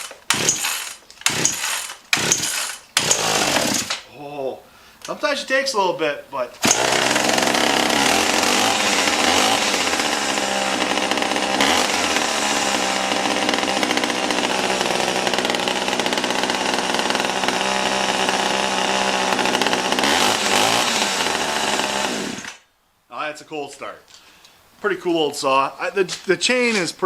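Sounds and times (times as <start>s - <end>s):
chainsaw running: 0.0s - 4.0s, 6.6s - 22.6s.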